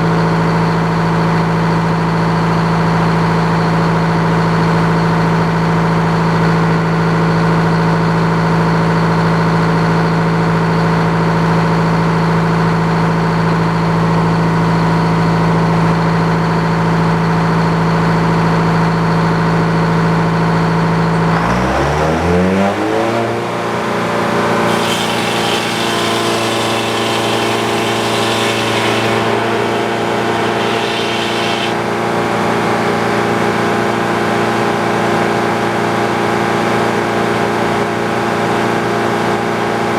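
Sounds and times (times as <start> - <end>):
sawmill engine running: 21.1 - 34.9
high hiss: 24.7 - 31.9.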